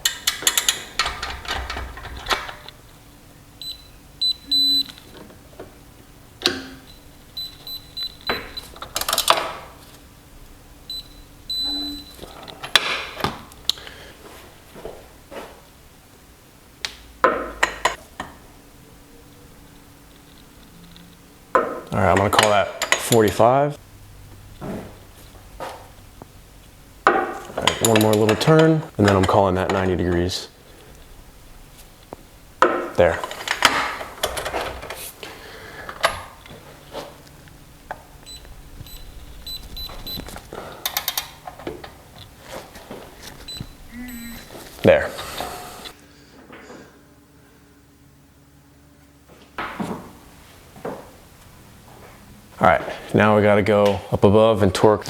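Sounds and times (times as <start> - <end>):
short high electronic beeps: 10.9 - 12.2, 43.9 - 44.5.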